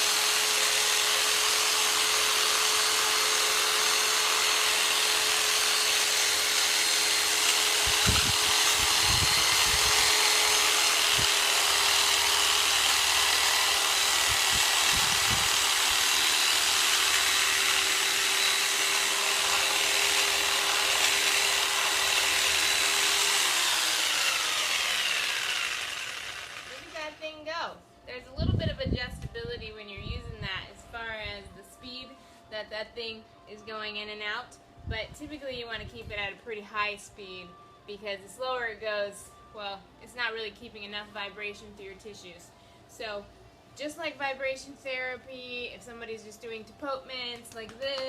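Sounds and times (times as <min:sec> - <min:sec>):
electric motor whine and buzzing: 0:00.0 - 0:27.4.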